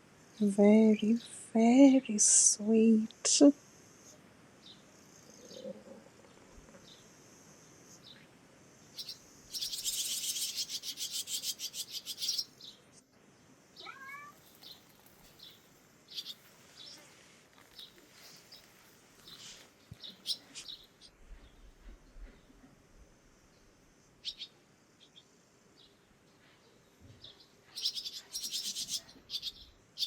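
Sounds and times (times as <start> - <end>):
small birds chirping: 0.2 - 22.6, 23.3 - 30.0
rapid run of bird chirps: 8.9 - 12.9, 13.8 - 22.5, 27.2 - 30.0.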